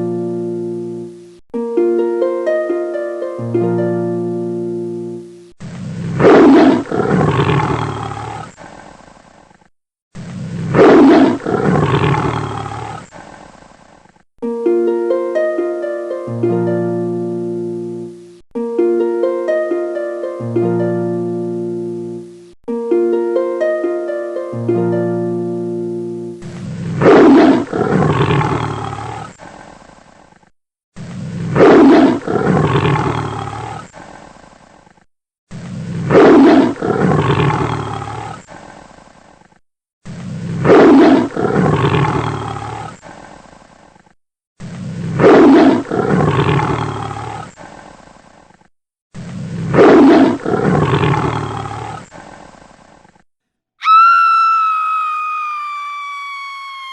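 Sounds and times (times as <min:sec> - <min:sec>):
plucked-string melody: 0:00.0 - 0:05.5, 0:14.4 - 0:26.4
animal roars: 0:05.6 - 0:08.9, 0:10.2 - 0:14.0, 0:26.4 - 0:29.8, 0:31.0 - 0:34.1, 0:35.5 - 0:43.4, 0:44.6 - 0:48.6, 0:49.2 - 0:52.8.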